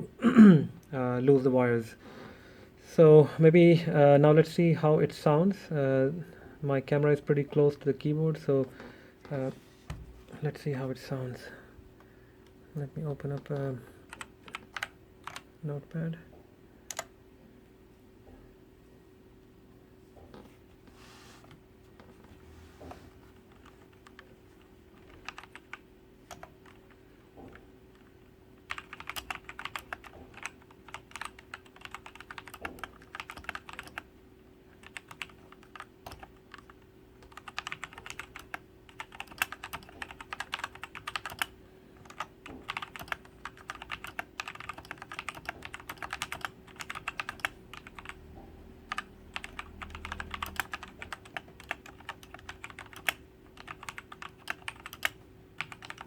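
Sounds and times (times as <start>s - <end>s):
mechanical keyboard typing: 13.2s - 15.5s, 16.9s - 17.1s, 25.0s - 26.9s, 28.7s - 34.1s, 34.8s - 48.2s, 48.9s - 56.0s.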